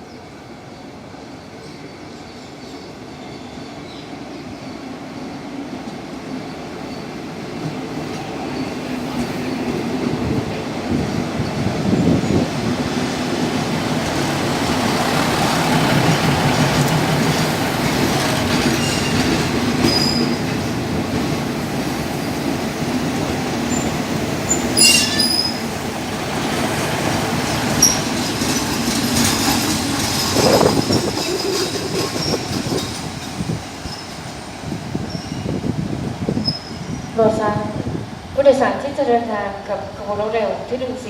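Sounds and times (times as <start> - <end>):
railway cars rumbling: 0.0 - 41.0
wheels squealing on rails: 1.5 - 5.0, 18.2 - 20.6, 23.7 - 25.8, 27.5 - 35.7, 36.3 - 37.3.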